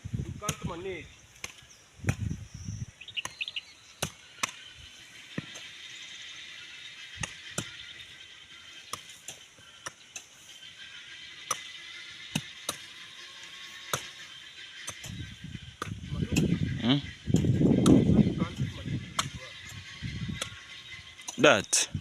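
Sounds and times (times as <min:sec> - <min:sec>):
bird chirp: 0:00.8 - 0:22.0
digging tool chopping ground: 0:01.4 - 0:02.4, 0:04.0 - 0:04.7, 0:07.1 - 0:07.8, 0:08.8 - 0:10.4, 0:12.3 - 0:13.0, 0:13.8 - 0:14.2.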